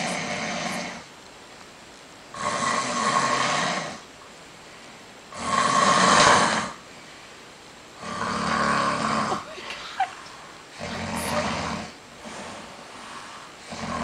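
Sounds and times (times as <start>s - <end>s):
loud snoring: 0.0s - 1.1s, 2.3s - 4.0s, 5.3s - 6.8s, 8.0s - 9.5s, 10.7s - 14.0s.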